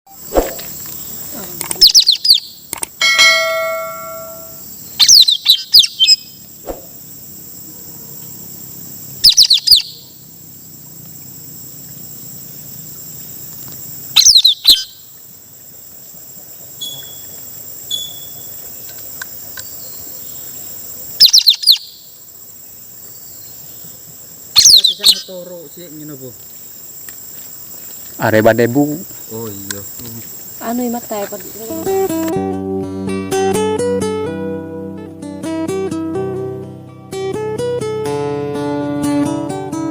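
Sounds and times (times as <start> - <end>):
high-pitched insect drone: 0.1 - 15.6, 16.7 - 32.4
bird calling high notes: 1.8 - 6.3
faint short high notes: 3.0 - 4.6
ringing tone: 3.0 - 4.6.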